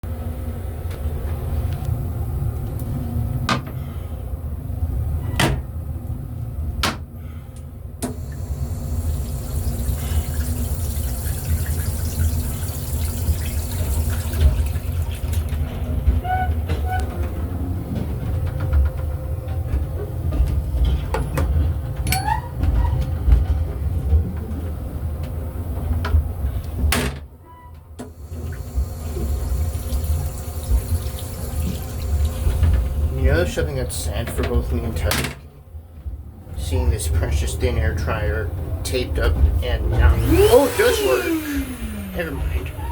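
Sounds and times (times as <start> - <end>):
train running rumble: 15.5 - 27.0
brief rising squeals: 40.2 - 42.9.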